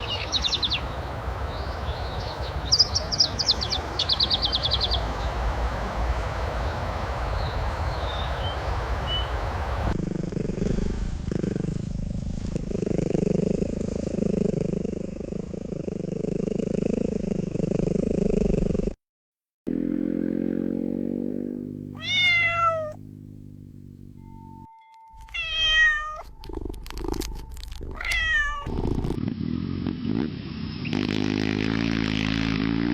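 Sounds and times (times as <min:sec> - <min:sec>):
bird chirping: 0:00.0 - 0:05.4
low outdoor rumble: 0:00.0 - 0:18.0, 0:19.7 - 0:32.8
low steady hum: 0:21.5 - 0:29.2
cat meowing: 0:22.0 - 0:23.0, 0:25.3 - 0:26.4, 0:27.9 - 0:28.7.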